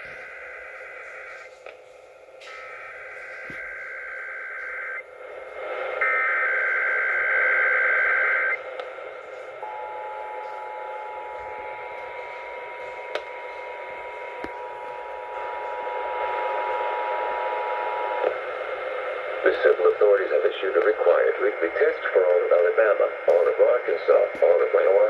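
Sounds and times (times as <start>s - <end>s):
radio static hiss: 0.0s - 25.0s
warbling data tones: 6.0s - 8.6s.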